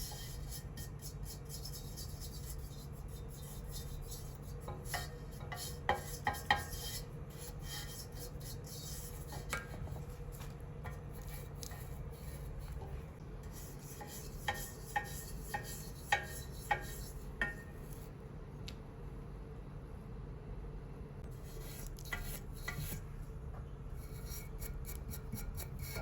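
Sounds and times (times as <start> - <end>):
scraping and rubbing: 0.2 - 18.1.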